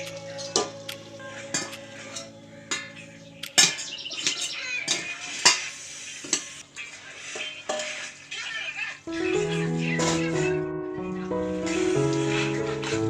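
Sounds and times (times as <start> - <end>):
metal spoon scraping cooking pan: 1.4 - 8.6.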